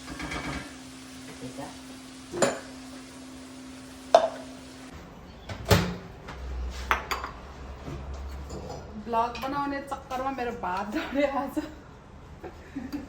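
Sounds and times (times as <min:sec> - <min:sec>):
pots and dishes clinking: 0:00.0 - 0:00.8, 0:02.3 - 0:02.8, 0:04.1 - 0:04.5, 0:08.3 - 0:09.6.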